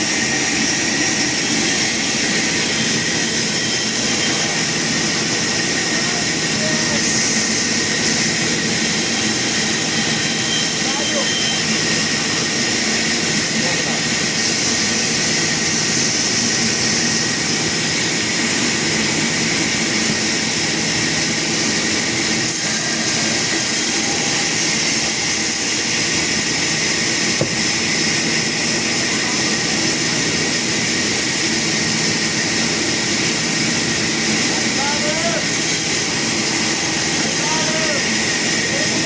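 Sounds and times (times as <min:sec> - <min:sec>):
sawmill saw running: 0:00.0 - 0:39.0.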